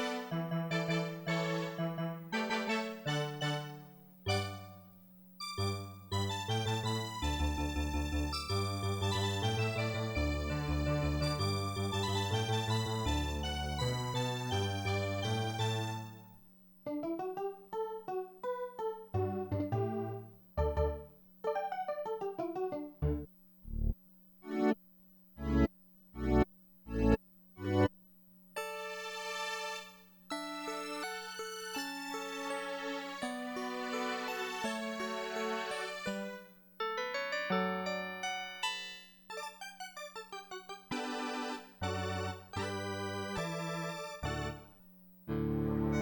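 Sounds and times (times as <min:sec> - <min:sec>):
keyboard playing piano-like chords: 0:00.0 - 0:04.7, 0:05.4 - 0:16.2, 0:16.9 - 0:23.3, 0:30.3 - 0:44.7, 0:45.3 - 0:46.0
faint steady hum: 0:18.9 - 0:32.1.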